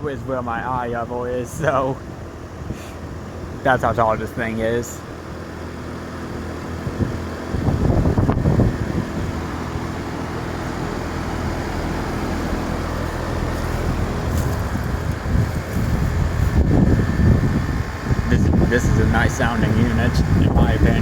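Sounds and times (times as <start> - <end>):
compressor low hum: 0.0 - 21.0
fan rushing: 0.0 - 21.0
wind gusts on microphone: 6.0 - 21.0.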